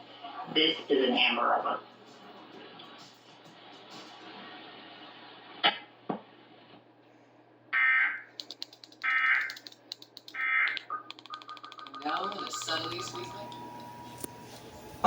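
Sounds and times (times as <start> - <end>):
sharp clicks: 8.3 - 13.3
warbling data bursts: 10.3 - 15.0.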